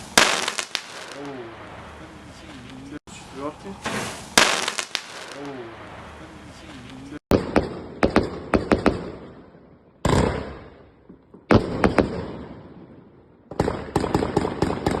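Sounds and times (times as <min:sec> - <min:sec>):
crackle fireworks bursting: 0:00.0 - 0:03.0, 0:03.8 - 0:09.1
fireworks hiss: 0:00.0 - 0:06.9.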